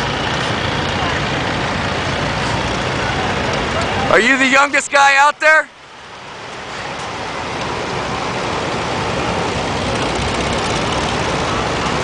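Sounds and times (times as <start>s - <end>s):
tractor engine chugging: 0.0s - 4.4s.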